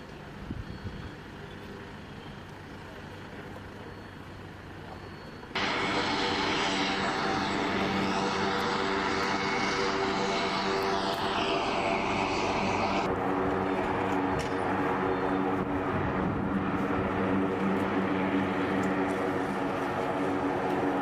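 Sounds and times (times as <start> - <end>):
aircraft engines running: 1.4 - 21.0
loud rushing hiss: 5.6 - 13.2.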